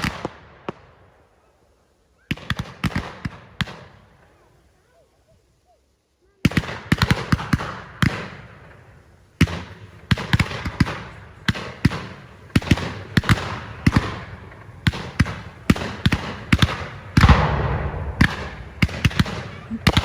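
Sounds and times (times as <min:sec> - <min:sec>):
fireworks bangs: 0:06.4 - 0:20.0.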